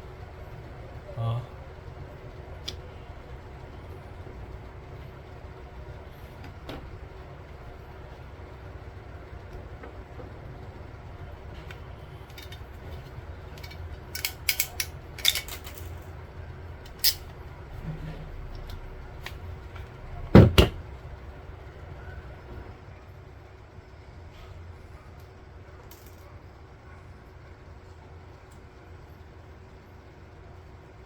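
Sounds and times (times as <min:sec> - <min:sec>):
loud knocks: 0:20.3 - 0:20.8.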